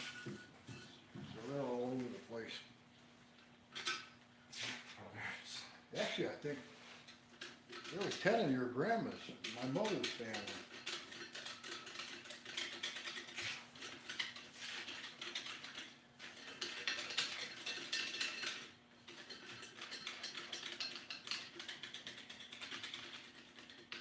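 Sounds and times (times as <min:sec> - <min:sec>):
metallic clicking of hand tools: 0:07.3 - 0:24.0.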